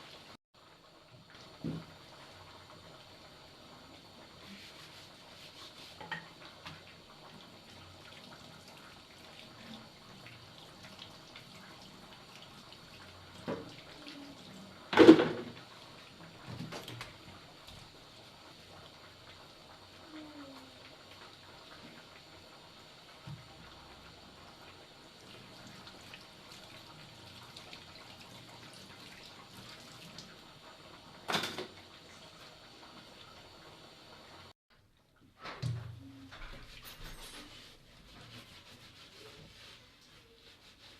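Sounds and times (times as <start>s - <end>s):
faint running water: 0.0s - 40.9s
tap water splash: 1.6s - 1.9s, 13.4s - 13.8s, 14.9s - 15.6s, 23.2s - 23.5s
small kitchen clicks: 6.0s - 7.1s, 14.9s - 15.7s, 16.4s - 17.8s, 31.2s - 31.9s.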